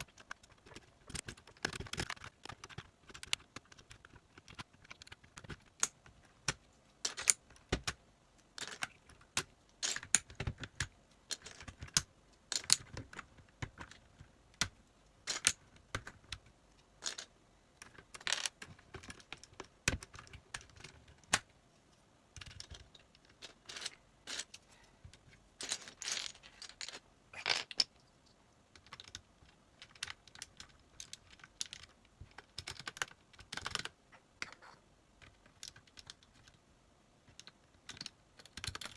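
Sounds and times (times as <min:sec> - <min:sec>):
mechanical keyboard keys clicking: 0:00.0 - 0:05.9, 0:28.8 - 0:34.0, 0:37.3 - 0:38.9.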